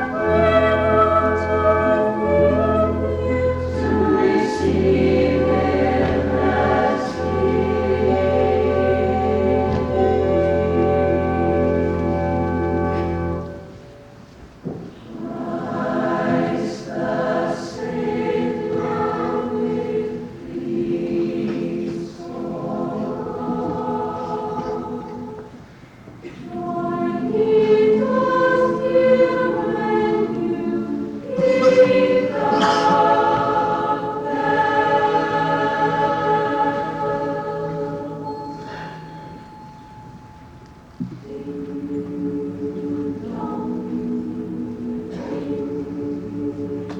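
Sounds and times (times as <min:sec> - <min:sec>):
choir singing sustained chords: 0:00.0 - 0:14.2, 0:15.0 - 0:46.9.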